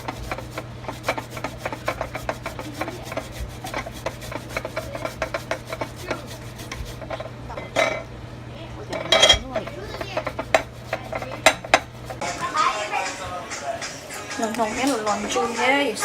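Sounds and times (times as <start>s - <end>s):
rubbing or scraping strokes: 0.0s - 7.3s, 9.6s - 14.0s.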